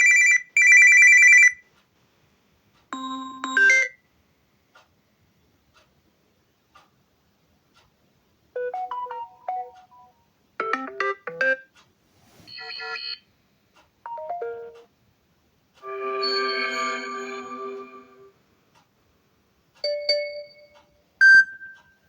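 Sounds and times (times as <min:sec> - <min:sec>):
phone ringtone jingles: 0:15.8 - 0:18.3.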